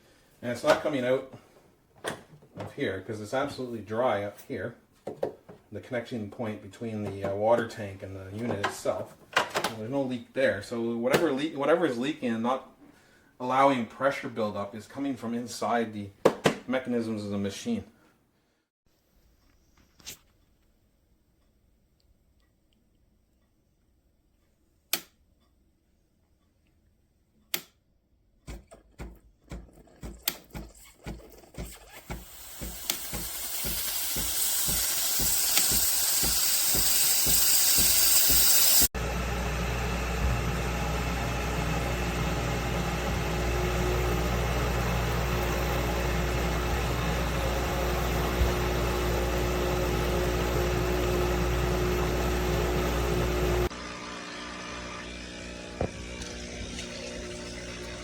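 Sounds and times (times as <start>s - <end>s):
pump humming: 31.6s - 58.0s
espresso machine pulses and hiss: 32.1s - 58.0s.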